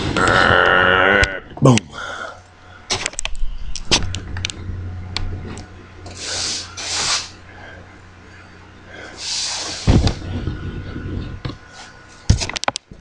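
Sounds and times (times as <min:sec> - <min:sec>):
steady low hum: 0:00.0 - 0:13.0
short hissing puffs: 0:06.1 - 0:07.4, 0:09.0 - 0:10.3.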